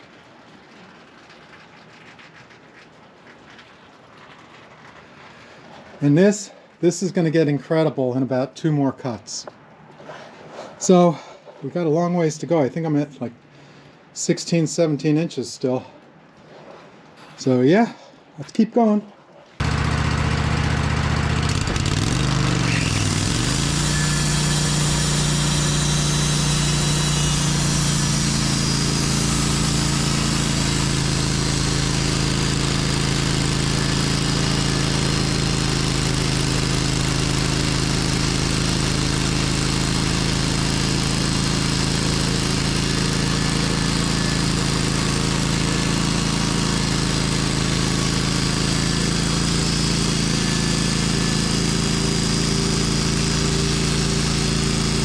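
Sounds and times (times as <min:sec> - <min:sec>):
sawmill engine running: 0:19.6 - 0:55.0.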